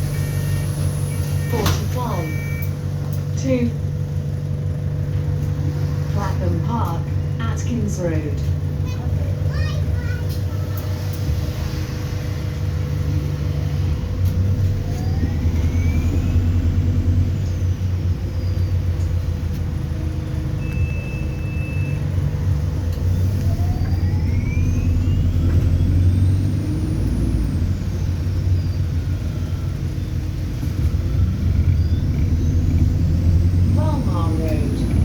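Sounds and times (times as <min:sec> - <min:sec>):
bus engine drone: 0:00.0 - 0:35.0
bus motor whine rising: 0:00.0 - 0:35.0
short single-tone beep: 0:00.1 - 0:02.8.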